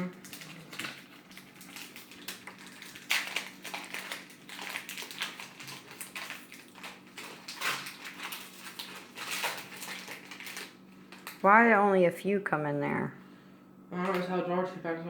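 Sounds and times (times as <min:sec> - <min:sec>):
card pack crinkling and rustling: 0:00.0 - 0:11.4.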